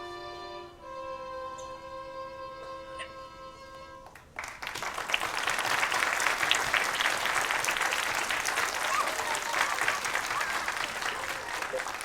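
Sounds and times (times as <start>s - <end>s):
children clapping: 4.0s - 12.0s.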